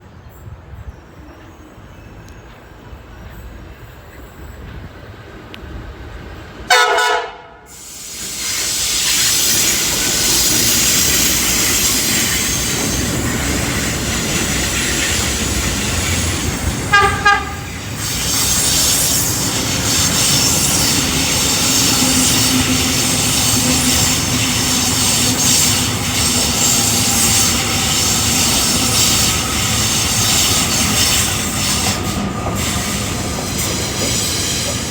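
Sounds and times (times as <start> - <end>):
passing train rail noise: 0.0 - 34.9
train horn blasts: 6.7 - 7.7, 16.8 - 17.8.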